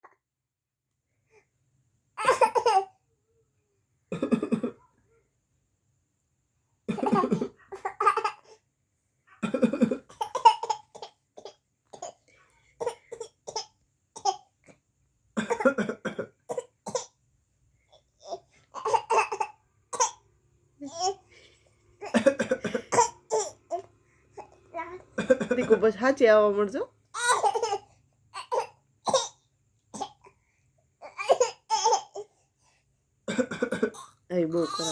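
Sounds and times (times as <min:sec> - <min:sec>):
child play-acting coughs: 0:04.1 - 0:04.9, 0:22.0 - 0:23.5.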